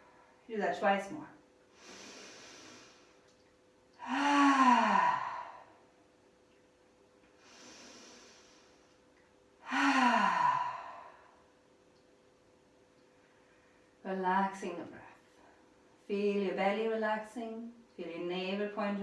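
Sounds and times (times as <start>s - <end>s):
woman breathing in deeply: 1.8s - 3.3s, 4.0s - 5.8s, 7.4s - 8.9s, 9.6s - 11.5s
woman sighing loudly: 4.0s - 5.7s, 9.6s - 11.3s.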